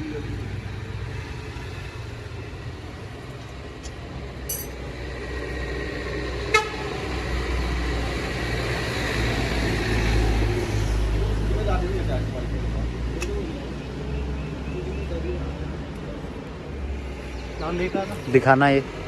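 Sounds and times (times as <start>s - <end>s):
street traffic rumble: 0.0s - 19.0s
high metallic ring: 4.5s - 4.8s
sharp metallic clink: 4.5s - 4.8s.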